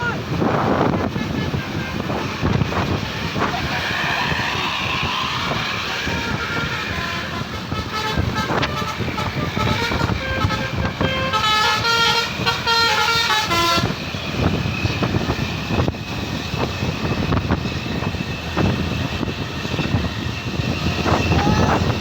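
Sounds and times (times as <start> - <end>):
vehicle noise: 0.0 - 22.0
multi-tone bus horn tune: 0.8 - 3.0, 5.5 - 14.6.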